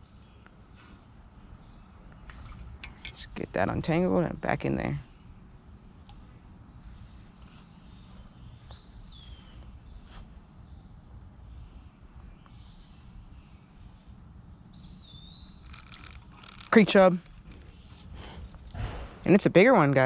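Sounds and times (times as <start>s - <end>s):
insect high-pitched drone: 0.0s - 20.0s
low rumbling noise: 17.4s - 20.0s.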